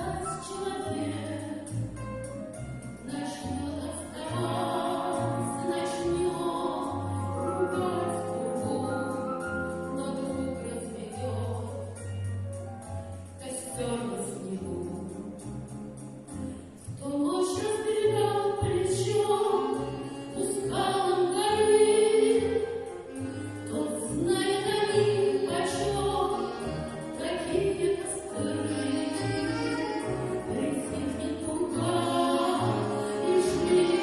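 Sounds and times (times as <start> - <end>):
woman singing classical style: 0.0 - 2.0, 3.0 - 12.0, 13.4 - 15.5, 16.8 - 34.0
instrumental accompaniment: 0.0 - 34.0.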